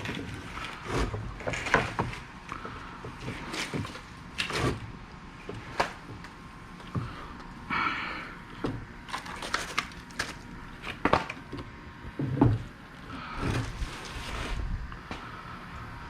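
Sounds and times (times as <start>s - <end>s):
packing material rustling: 9.0s - 11.4s, 13.3s - 15.1s.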